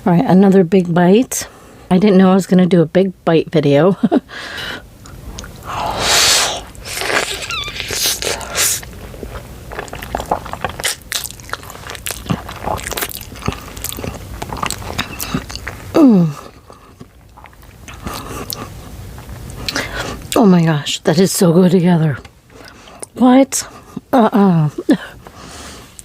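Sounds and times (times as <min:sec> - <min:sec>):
wet chewing with small clicks: 0:05.0 - 0:05.6, 0:07.0 - 0:20.4, 0:22.2 - 0:23.2
slurping noodles: 0:05.7 - 0:15.6.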